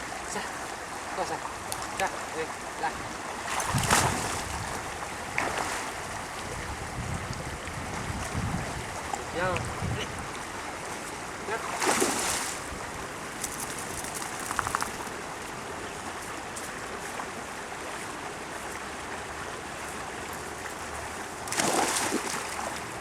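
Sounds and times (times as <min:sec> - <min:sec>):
river water rushing: 0:10.0 - 0:23.0
faint clicks: 0:13.4 - 0:15.2.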